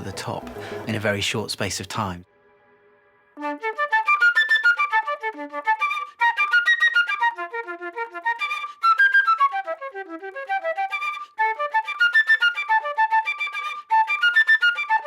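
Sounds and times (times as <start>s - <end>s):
fast flute melody: 3.4s - 15.0s.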